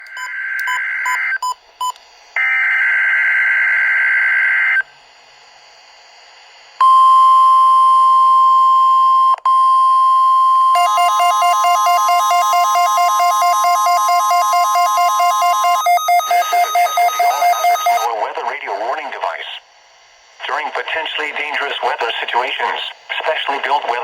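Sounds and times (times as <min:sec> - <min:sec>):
steady warning alarm tone: 0:06.8 - 0:18.1
warbling radio alarm siren: 0:10.8 - 0:18.1
short beeps: 0:14.1 - 0:18.1.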